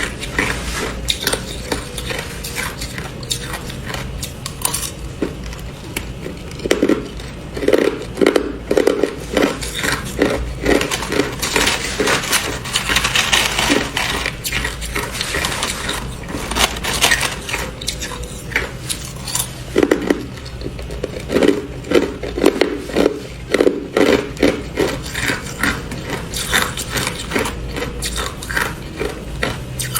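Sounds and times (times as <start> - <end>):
ice being crunched: 9.0 - 19.5
ice cubes clinking: 9.6 - 19.5.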